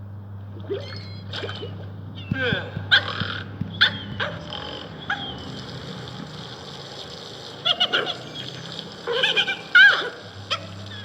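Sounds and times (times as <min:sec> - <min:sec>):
dog whining yips: 0:02.5 - 0:05.4.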